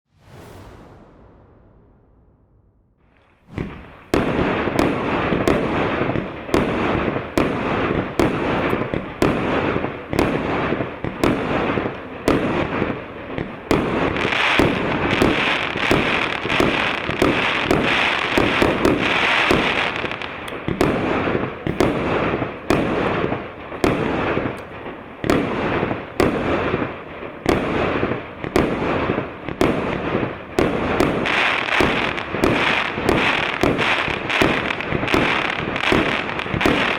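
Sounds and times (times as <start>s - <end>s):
fireworks crackling: 0.1s - 36.9s
fireworks launch thumps and bursts: 0.2s - 9.4s, 28.4s - 36.9s.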